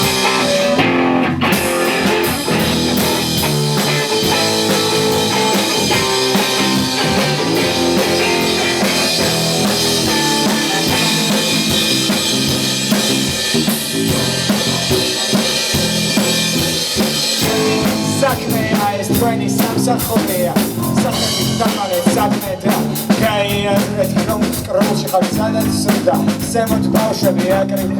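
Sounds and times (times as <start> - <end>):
rock band playing: 0.0 - 27.9.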